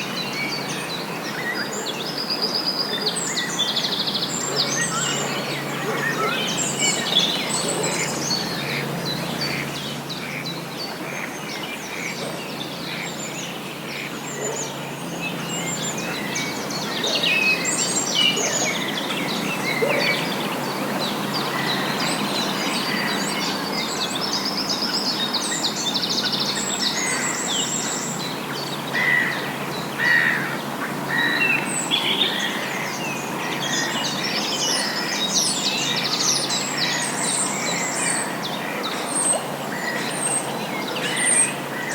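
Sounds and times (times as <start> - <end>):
songbirds chirping and trilling: 0.0 - 41.9.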